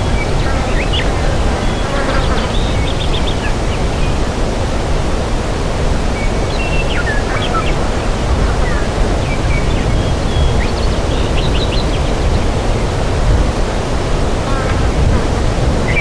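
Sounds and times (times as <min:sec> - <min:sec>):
birds chirping: 0:00.0 - 0:04.3, 0:06.2 - 0:12.7, 0:14.4 - 0:16.0
steady rushing noise: 0:00.0 - 0:16.0.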